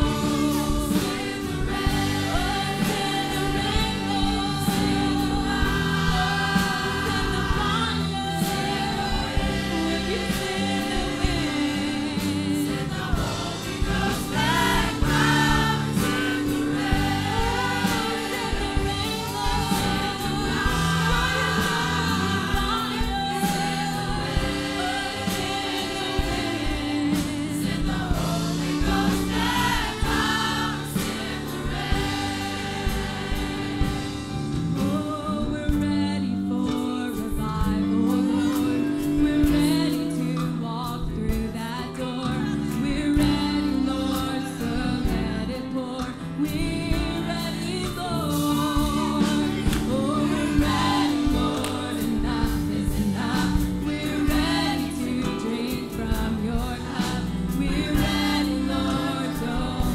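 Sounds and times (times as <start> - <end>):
group of voices singing: 0.0 - 59.9
instrumental accompaniment: 0.0 - 59.9.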